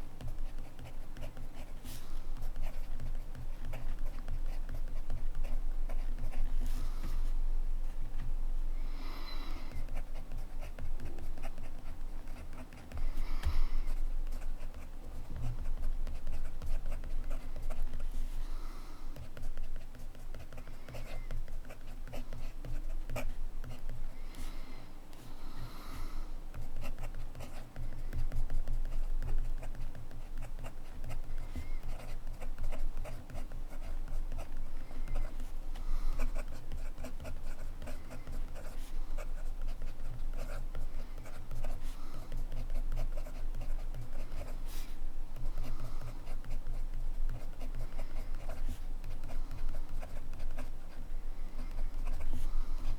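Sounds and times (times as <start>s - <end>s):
fountain pen scratching on paper: 0.2s - 6.6s, 36.2s - 51.0s, 51.6s - 52.9s.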